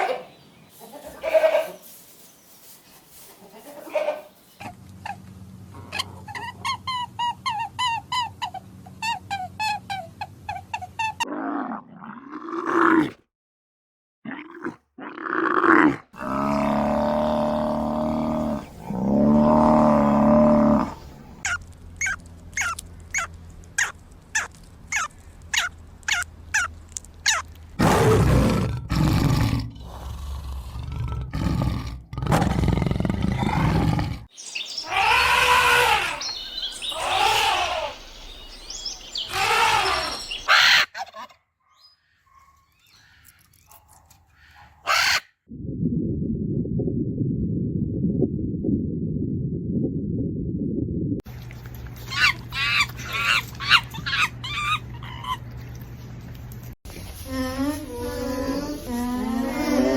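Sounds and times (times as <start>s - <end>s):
rapidly repeated animal call: 34.8s - 38.0s, 39.2s - 41.2s
loud noisy animal call: 34.8s - 38.1s, 39.2s - 40.9s
long low drawn-out calls: 34.8s - 40.8s.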